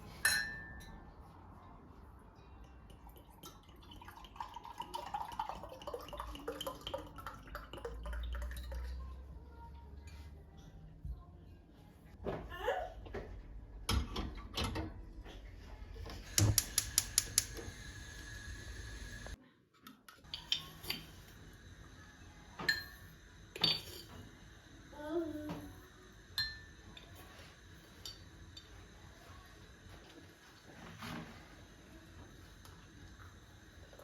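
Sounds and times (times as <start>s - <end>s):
dishes and cutlery clinking: 0.0s - 1.1s, 20.2s - 21.3s, 23.6s - 24.3s, 26.4s - 28.7s
household objects clicking and knocking: 16.2s - 17.9s.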